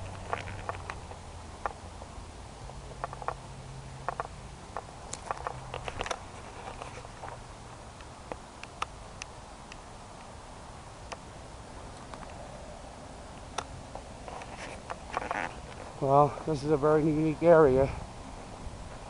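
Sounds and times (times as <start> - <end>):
light clicks and crackles: 0.0 - 2.1, 4.0 - 7.4, 11.9 - 12.4
steady background hiss: 0.0 - 19.0.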